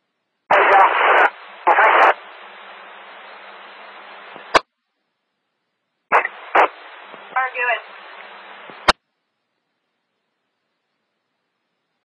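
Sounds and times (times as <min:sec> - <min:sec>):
faint hum: 0:00.0 - 0:12.0
open channel hiss: 0:00.0 - 0:12.0
radio static bursts: 0:00.5 - 0:04.6, 0:06.1 - 0:09.0
sharp radio click: 0:00.5 - 0:04.7, 0:06.1 - 0:09.0.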